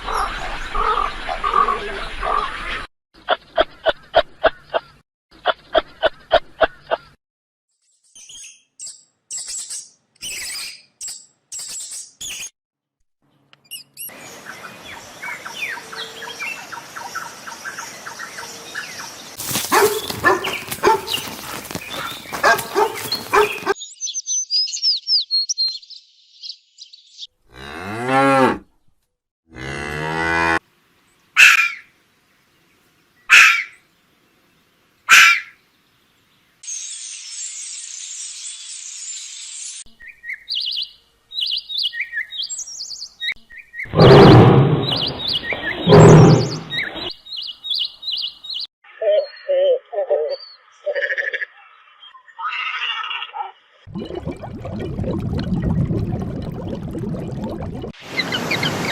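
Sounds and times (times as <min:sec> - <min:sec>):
noisy farmyard: 0:00.0 - 0:07.2, 0:13.2 - 0:23.8, 0:24.8 - 0:36.6, 0:39.8 - 0:54.0
cow mooing: 0:27.5 - 0:28.7, 0:29.5 - 0:30.6.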